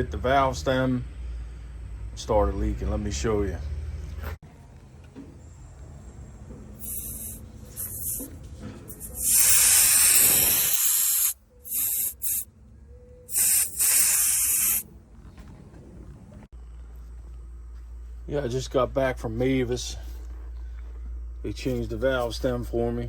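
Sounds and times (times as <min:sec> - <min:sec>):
air hissing out of tire valve: 0:06.8 - 0:12.5, 0:13.3 - 0:14.8.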